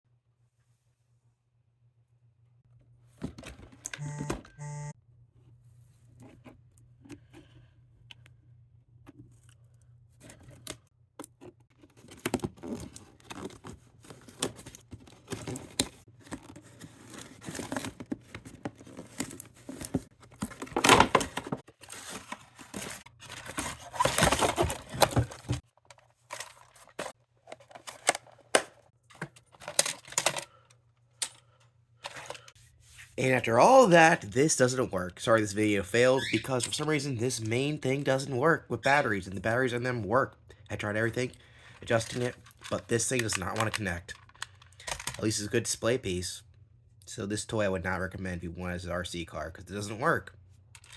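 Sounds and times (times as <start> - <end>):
packaging rustling and crinkling: 11.8 - 28.4
cardboard tearing and crumpling: 12.0 - 25.6.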